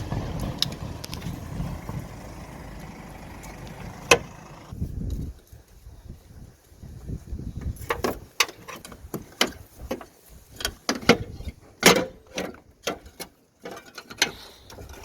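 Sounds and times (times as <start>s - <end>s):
sharp clicks and knocks of car parts: 2.7s - 4.7s, 7.9s - 15.0s.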